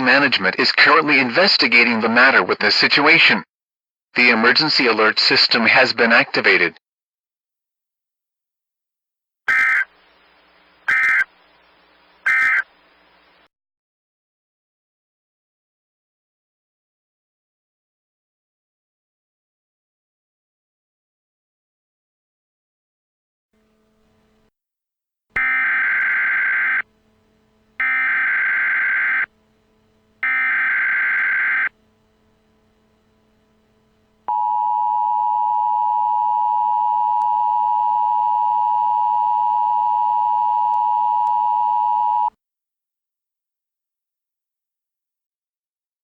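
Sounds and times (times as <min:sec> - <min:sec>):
two-tone attention signal: 0:09.5 - 0:09.8, 0:10.9 - 0:11.3, 0:12.3 - 0:12.6, 0:25.4 - 0:27.0, 0:27.8 - 0:29.4, 0:30.2 - 0:33.4
digital header data bursts: 0:09.5 - 0:09.9, 0:10.9 - 0:11.3, 0:12.3 - 0:12.6, 0:25.4 - 0:27.0, 0:27.6 - 0:34.2.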